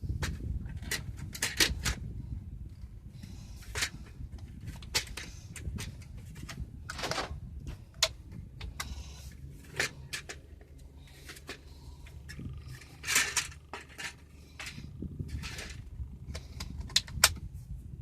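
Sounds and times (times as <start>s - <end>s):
low steady hum: 0.0s - 18.0s
scraping rattle of plastic trim: 3.5s - 17.4s.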